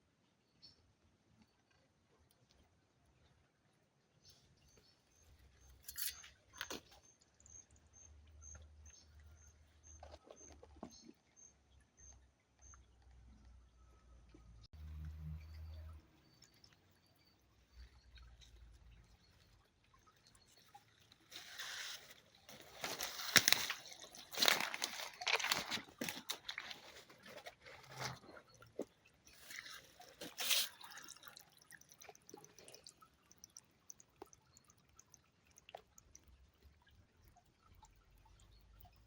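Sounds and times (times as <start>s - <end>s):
small water drips: 0.6s - 39.0s.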